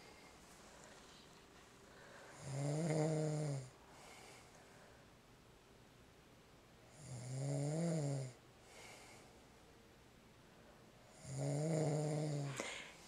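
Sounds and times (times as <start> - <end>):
soft breath out: 0.0 - 2.4, 8.6 - 9.4, 12.4 - 13.0
man snoring heavily: 2.4 - 3.7, 7.0 - 8.4, 11.2 - 12.8.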